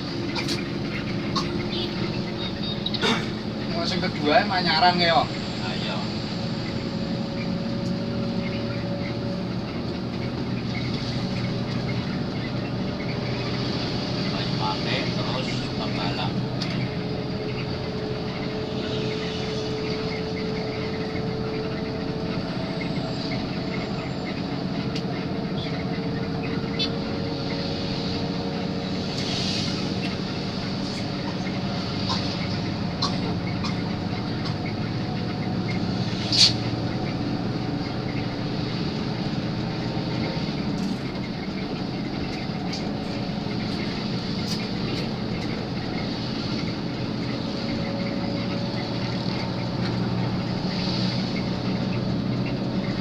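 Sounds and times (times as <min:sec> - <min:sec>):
bus engine and road drone: 0:00.0 - 0:53.0.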